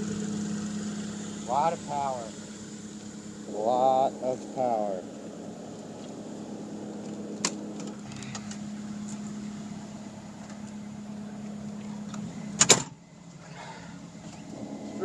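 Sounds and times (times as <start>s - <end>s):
track loader humming: 0.0s - 15.0s
cab door shutting: 12.1s - 13.0s.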